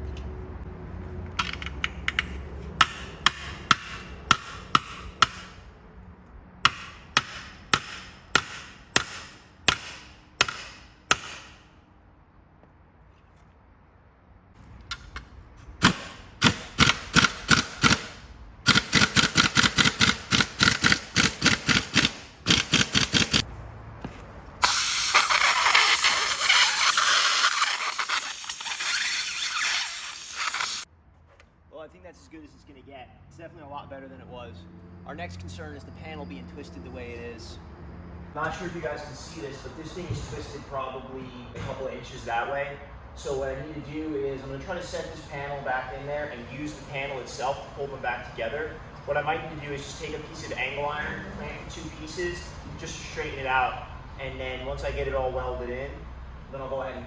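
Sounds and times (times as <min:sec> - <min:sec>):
hammer striking sheet steel: 0:02.8 - 0:05.6, 0:06.6 - 0:11.7.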